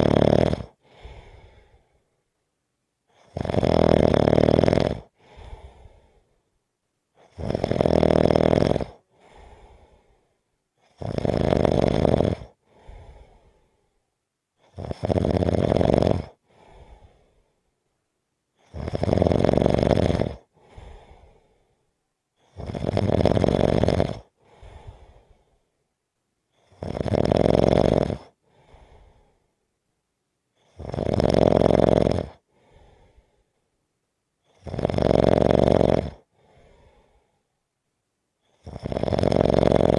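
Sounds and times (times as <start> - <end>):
person snoring: 0.0 - 1.6, 3.2 - 5.9, 7.2 - 9.0, 10.9 - 12.6, 14.7 - 16.4, 18.7 - 20.4, 22.5 - 24.3, 26.7 - 28.3, 30.7 - 32.4, 34.6 - 36.2, 38.6 - 39.9.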